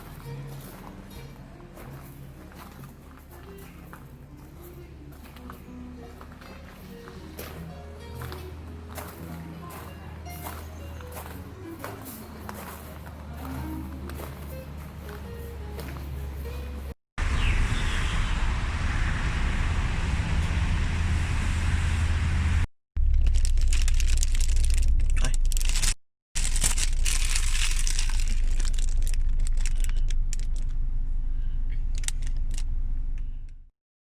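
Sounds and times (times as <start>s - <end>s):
heavy low rumble: 13.0s - 33.6s.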